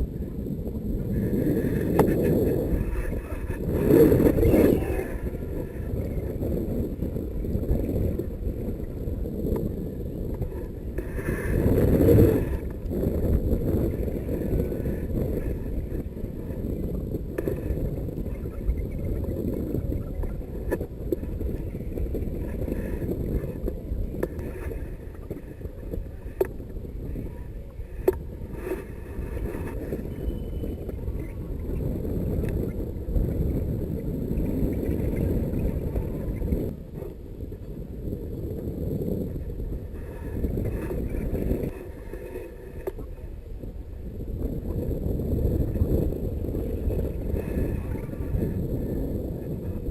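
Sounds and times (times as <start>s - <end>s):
wind rushing over microphone: 0.0s - 49.9s.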